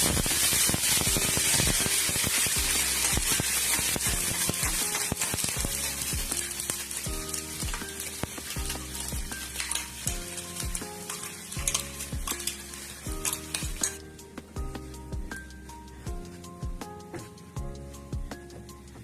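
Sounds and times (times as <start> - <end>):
background music with steady beat: 0.0 - 19.0
sizzling in a pan: 0.0 - 19.0
spoon stirring and scraping: 0.4 - 14.0.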